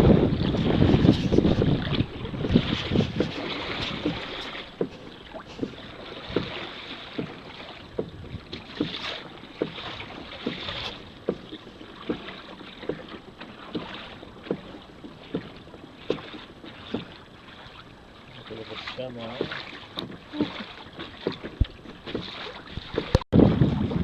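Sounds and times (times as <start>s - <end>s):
wind buffeting microphone: 0.0s - 6.6s, 7.2s - 8.9s, 21.4s - 24.0s
paddle knocking: 0.0s - 24.0s
water splashing: 0.0s - 24.0s.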